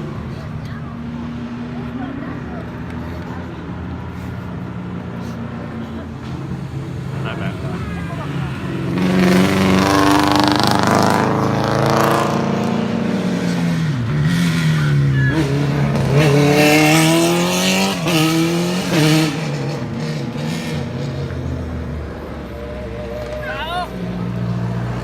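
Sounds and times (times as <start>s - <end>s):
race car engine revving: 0.0s - 25.0s.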